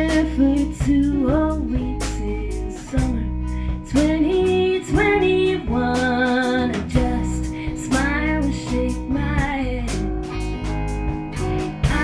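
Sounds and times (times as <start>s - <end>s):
steady drum beat: 0.0s - 12.0s
strummed acoustic guitar: 0.0s - 12.0s.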